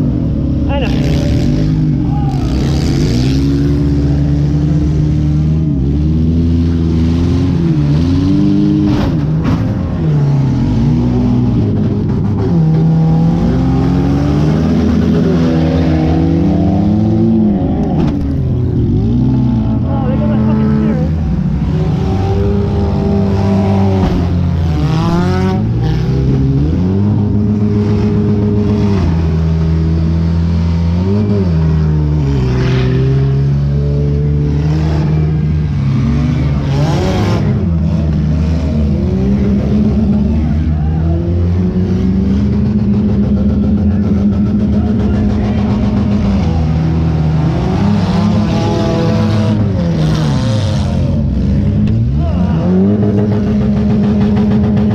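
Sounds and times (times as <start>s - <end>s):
car engine revving: 0.0s - 54.9s.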